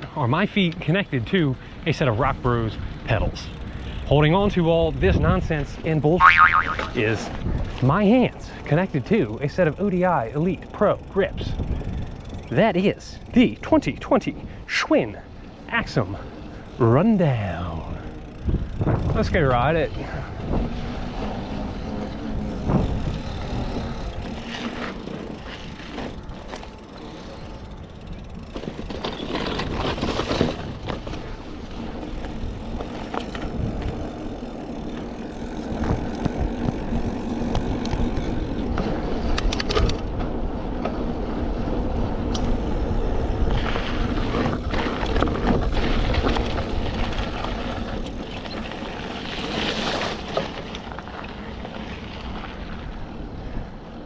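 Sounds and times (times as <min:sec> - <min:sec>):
tyre and road noise: 0:00.0 - 0:54.0
wind buffeting microphone: 0:02.2 - 0:08.4, 0:10.8 - 0:14.7, 0:17.6 - 0:26.5, 0:30.5 - 0:49.2.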